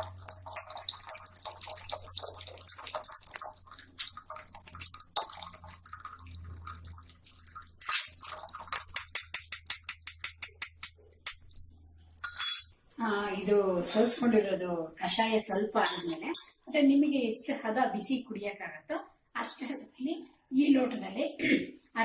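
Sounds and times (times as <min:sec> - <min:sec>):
liquid trickling: 0:00.0 - 0:10.2
clinks and scrapes: 0:08.9 - 0:12.8, 0:13.8 - 0:14.2.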